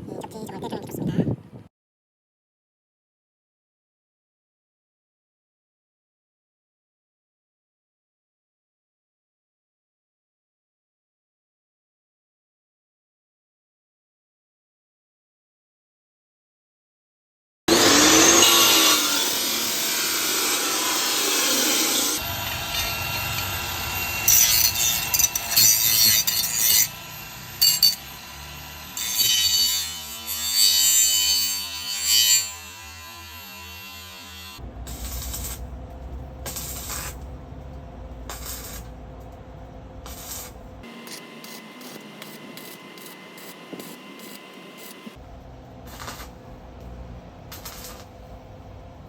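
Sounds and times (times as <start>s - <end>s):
power tool working on steel: 17.7s - 35.6s, 40.0s - 45.2s, 45.8s - 46.4s, 47.5s - 48.1s.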